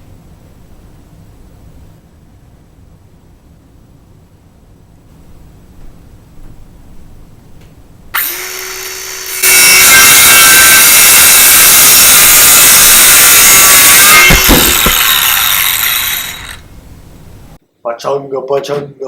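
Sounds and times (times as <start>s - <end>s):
jigsaw cutting wood: 8.2s - 16.7s
knocks: 14.2s - 15.2s.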